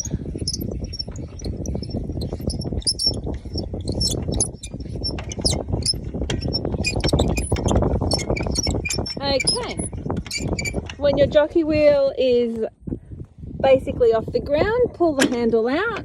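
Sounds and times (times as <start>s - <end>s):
birds chirping: 0.0s - 10.7s
hand crank clicking and scraping: 0.0s - 11.0s.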